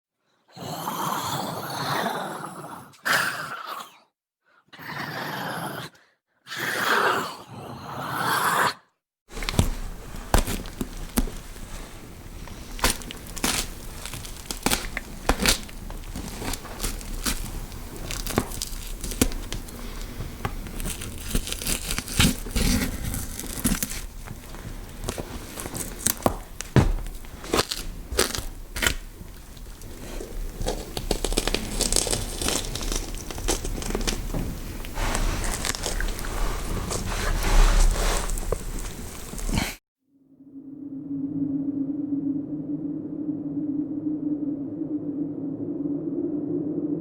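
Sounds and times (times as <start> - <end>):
flesh scraping and crackling: 9.3 - 39.8.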